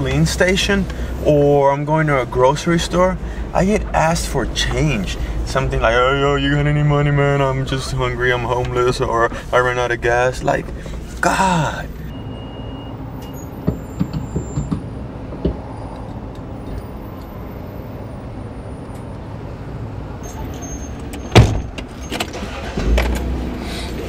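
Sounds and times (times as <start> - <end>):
low vehicle rumble: 0.0 - 24.0
small knocks: 13.6 - 15.6
car door slamming: 21.2 - 23.2.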